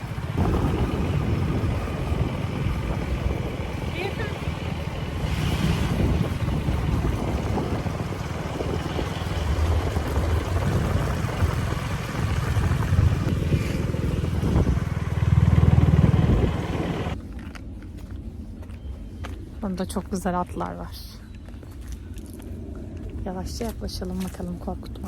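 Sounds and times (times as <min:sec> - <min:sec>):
motorcycle engine running: 0:00.0 - 0:17.2
wind noise on microphone: 0:00.0 - 0:19.7.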